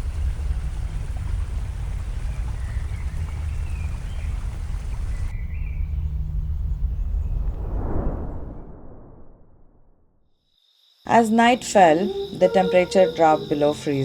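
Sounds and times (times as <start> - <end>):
wind buffeting microphone: 0.0 - 8.8.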